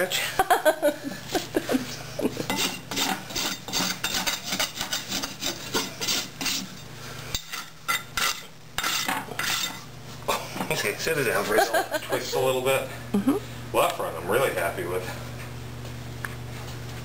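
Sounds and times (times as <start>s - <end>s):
rasp filing hoof: 2.6s - 6.7s.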